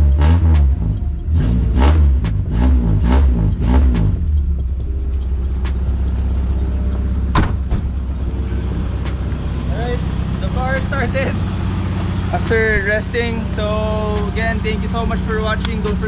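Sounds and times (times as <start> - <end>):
car engine revving and idling: 0.0 - 16.0
sharp click: 15.6 - 16.0.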